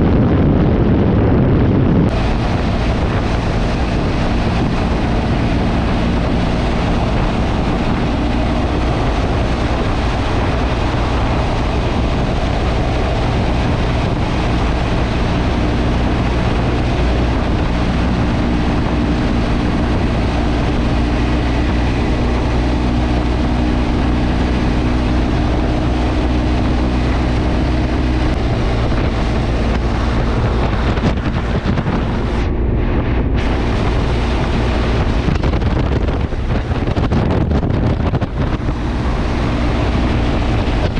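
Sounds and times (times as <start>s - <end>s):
motorcycle engine cruising: 0.0s - 40.9s
wind rushing over microphone: 0.0s - 40.9s.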